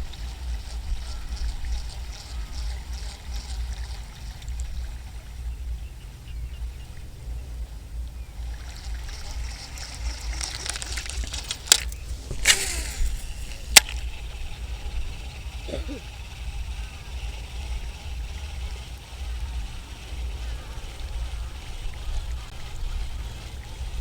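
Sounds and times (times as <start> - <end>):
wind buffeting microphone: 0.0 - 24.0
water sloshing and trickling: 8.4 - 14.0.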